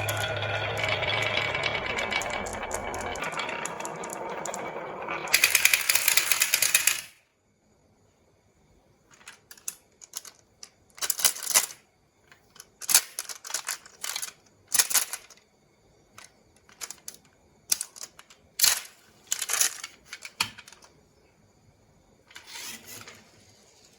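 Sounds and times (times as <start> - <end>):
marbles rattling down wooden track: 0.0 - 7.1.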